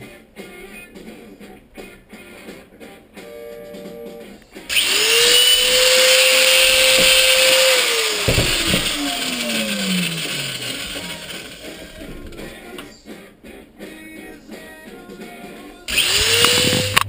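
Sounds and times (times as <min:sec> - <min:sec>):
electric power tool motor: 0:04.7 - 0:12.0, 0:15.9 - 0:17.0
knocks of slowing tool: 0:04.7 - 0:12.4, 0:15.9 - 0:17.0.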